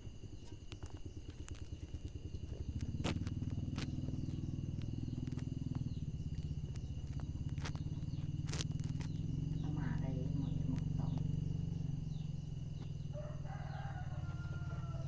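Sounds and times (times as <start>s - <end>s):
low pulsing drone: 0.0s - 15.0s
wood fire crackling and popping: 0.3s - 11.4s.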